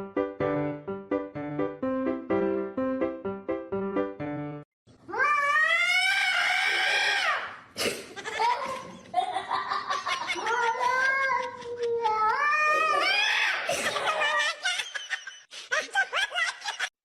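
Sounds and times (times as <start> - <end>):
cat yowling: 5.1 - 7.5, 12.1 - 13.6.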